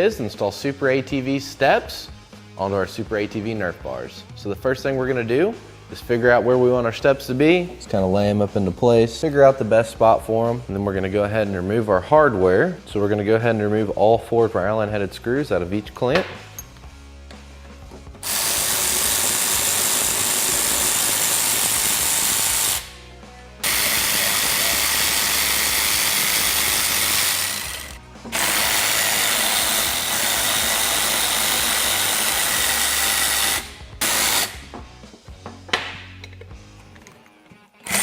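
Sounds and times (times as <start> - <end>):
cordless drill spinning screws: 18.2 - 23.0, 23.6 - 34.6.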